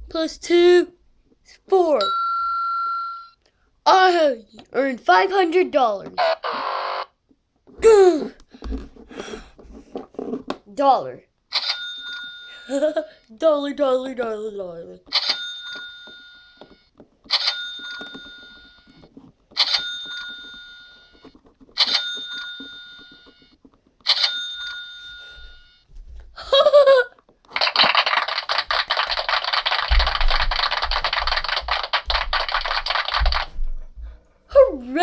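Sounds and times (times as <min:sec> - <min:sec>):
dense crackling noise: 0:27.5 - 0:33.6.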